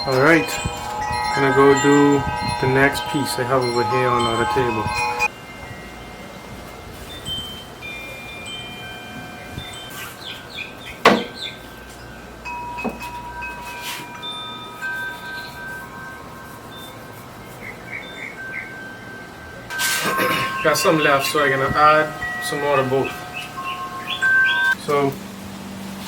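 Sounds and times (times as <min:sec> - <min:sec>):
chimes ringing: 0:00.0 - 0:25.2
sharp knocks: 0:11.0 - 0:11.4.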